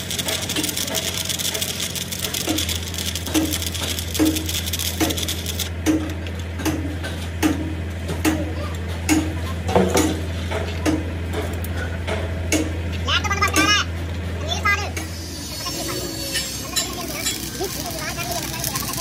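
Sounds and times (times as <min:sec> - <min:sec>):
low electrical hum: 0:00.0 - 0:19.0.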